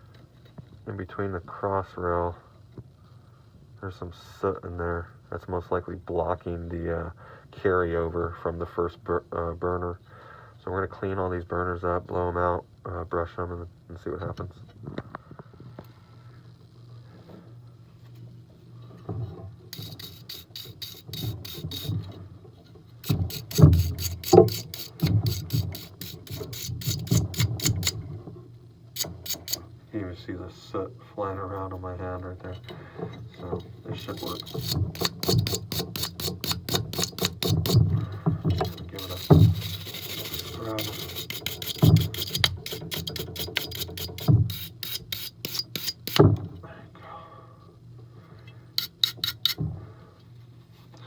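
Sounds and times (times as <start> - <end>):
brush scrubbing metal burner: 19.7 - 22.2, 23.0 - 28.0, 29.0 - 29.6, 33.3 - 46.3, 48.8 - 49.6.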